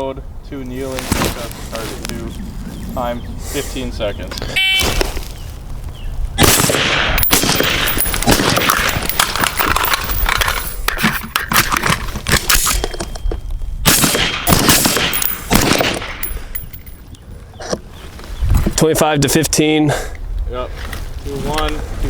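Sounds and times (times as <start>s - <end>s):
suppressed rifle shots: 6.4s - 10.7s, 13.8s - 16.7s.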